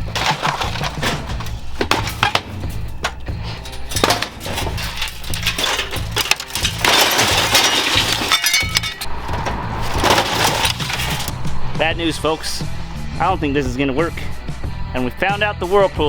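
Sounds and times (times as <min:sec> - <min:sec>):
glass breaking: 0:00.0 - 0:11.3
metal cracks and clinks: 0:00.0 - 0:11.3
grinding crunching: 0:00.0 - 0:11.5
loader engine running: 0:00.0 - 0:11.7.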